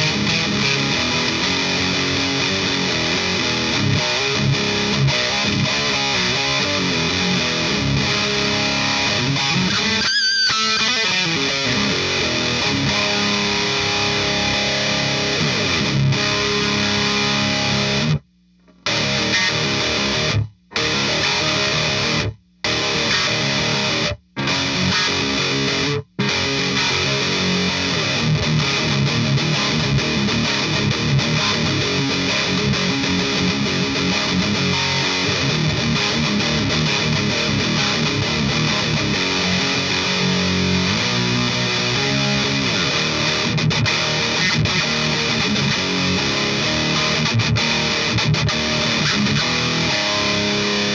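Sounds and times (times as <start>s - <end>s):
distorted electric guitar riff: 0.0s - 50.9s.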